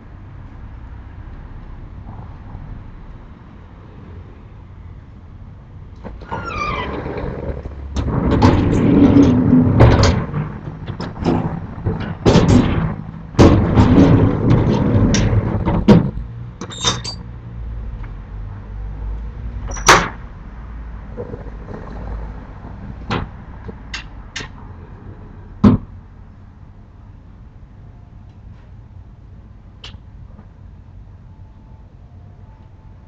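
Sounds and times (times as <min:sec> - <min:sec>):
storm shutters banging and rattling: 0:05.9 - 0:17.3, 0:19.6 - 0:20.3, 0:21.1 - 0:26.0.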